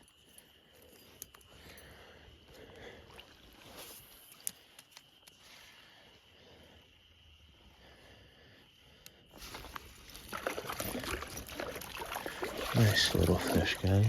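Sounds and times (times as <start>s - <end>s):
faint creek water running: 0.0s - 6.4s, 9.3s - 14.0s.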